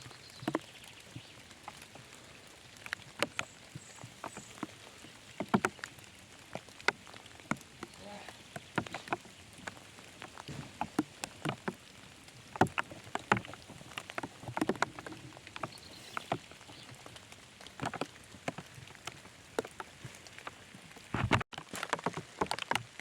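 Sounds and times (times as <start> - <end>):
rain hiss: 0.0 - 21.2
sharp knocks and taps: 5.4 - 5.9, 12.5 - 16.4.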